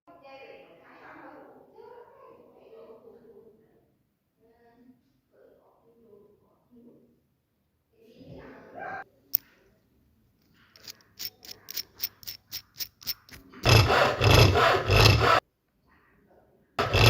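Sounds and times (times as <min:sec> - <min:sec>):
hand tool rasping wood: 0:10.8 - 0:15.4, 0:16.8 - 0:17.0.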